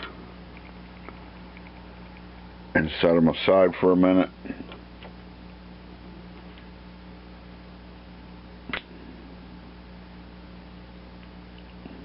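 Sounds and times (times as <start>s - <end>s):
low electrical hum: 0.0s - 12.0s
faint small click: 8.7s - 8.9s.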